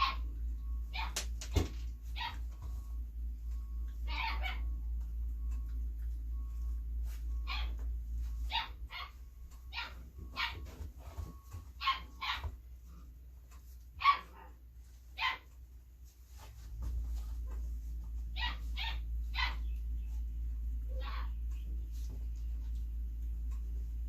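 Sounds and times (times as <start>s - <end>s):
puppy yipping and barking: 0.0s - 0.3s, 0.9s - 1.3s, 2.1s - 2.6s, 4.0s - 4.8s, 7.4s - 7.8s, 8.4s - 10.8s, 11.8s - 12.6s, 14.0s - 14.6s, 15.2s - 15.5s, 18.3s - 19.8s, 20.9s - 21.4s
low steady hum: 0.0s - 24.0s.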